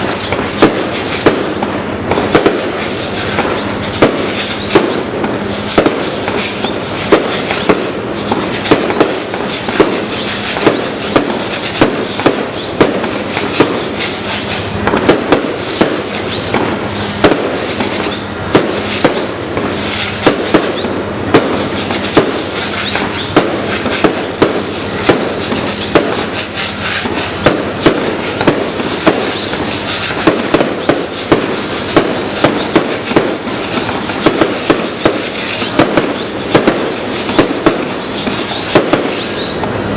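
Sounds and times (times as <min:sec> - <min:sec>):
fireworks crackling: 0:00.0 - 0:39.9
fireworks shells bursting: 0:00.0 - 0:39.9
fireworks whistles: 0:00.0 - 0:39.9.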